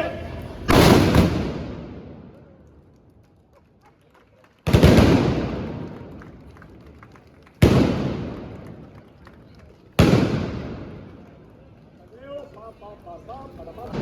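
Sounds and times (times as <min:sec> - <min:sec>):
blunderbuss blasts with echo: 0:00.4 - 0:02.4.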